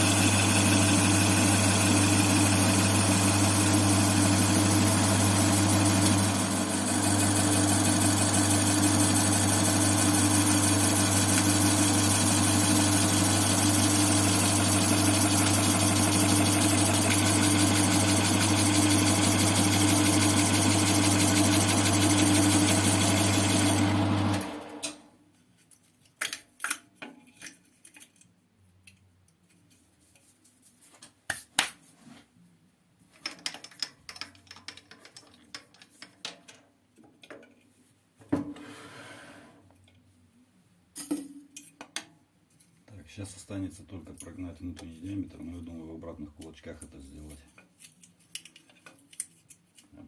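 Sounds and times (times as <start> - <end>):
metal lathe humming: 0.0 - 24.9.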